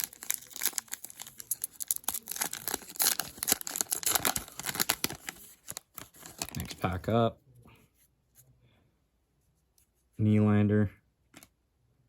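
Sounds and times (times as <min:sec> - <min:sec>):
wrapper crinkling and tearing: 0:00.0 - 0:06.9.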